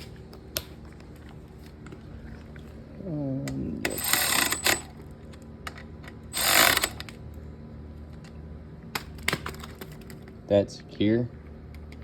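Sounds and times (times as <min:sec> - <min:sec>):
ratchet wrench clicking: 0:03.9 - 0:04.9, 0:06.4 - 0:07.1.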